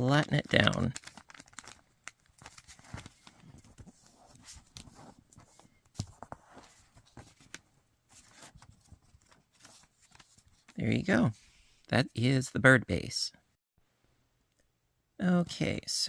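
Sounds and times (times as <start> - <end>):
paper rustling and crinkling: 0.2 - 10.8.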